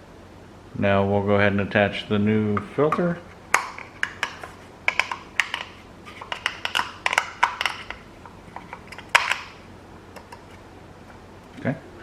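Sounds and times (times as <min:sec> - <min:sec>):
plastic parts clicking and tapping: 0:02.6 - 0:09.6.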